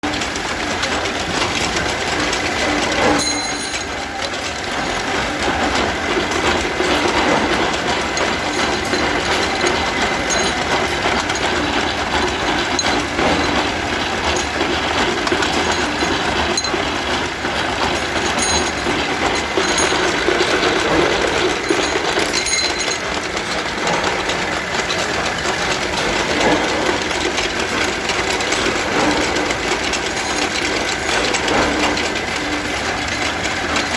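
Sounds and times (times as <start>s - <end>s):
machine rattling: 0.0s - 33.9s.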